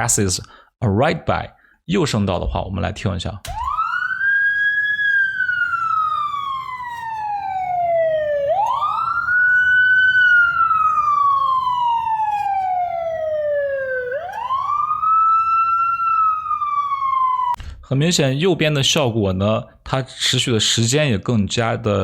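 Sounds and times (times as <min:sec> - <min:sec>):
wailing siren: 0:03.5 - 0:17.6.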